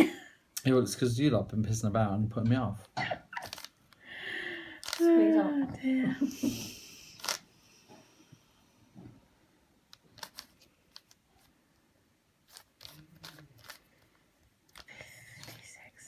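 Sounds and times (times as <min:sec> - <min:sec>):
plastic puzzle cube clicks: 0:03.4 - 0:03.7, 0:04.8 - 0:05.0, 0:10.2 - 0:11.2.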